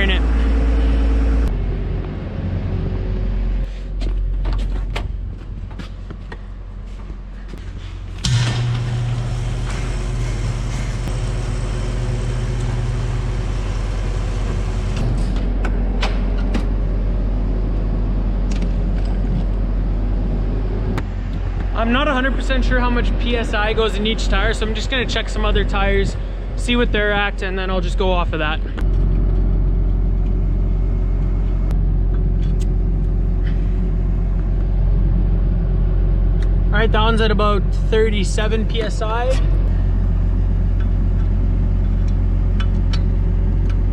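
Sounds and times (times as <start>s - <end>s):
tractor engine droning: 0.0s - 4.4s, 7.6s - 20.7s, 28.7s - 43.9s
tractor engine idling: 8.9s - 15.6s.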